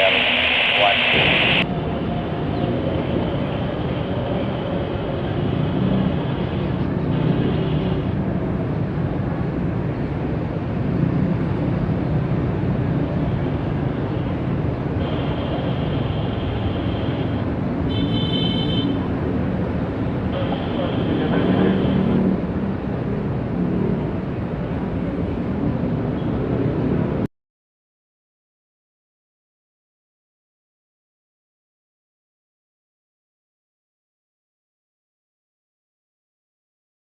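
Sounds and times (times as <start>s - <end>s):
jet engines rumbling: 0.0s - 7.1s, 12.8s - 17.9s.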